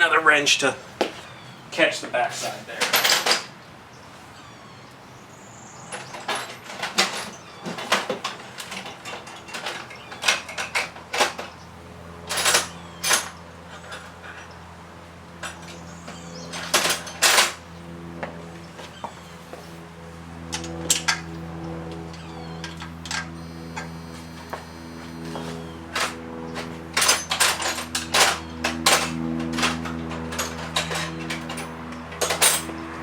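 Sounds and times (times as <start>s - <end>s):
steady low hum: 10.5s - 33.0s.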